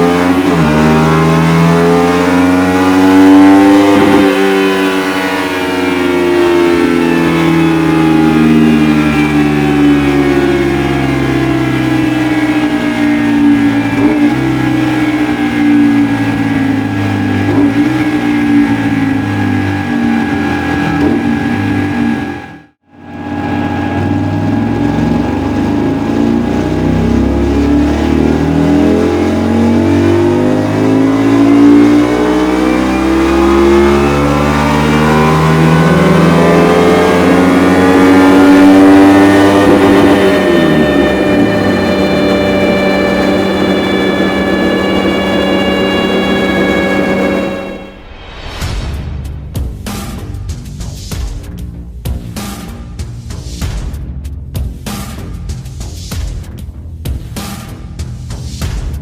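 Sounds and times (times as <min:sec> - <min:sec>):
motorcycle engine revving: 0:00.0 - 0:48.0.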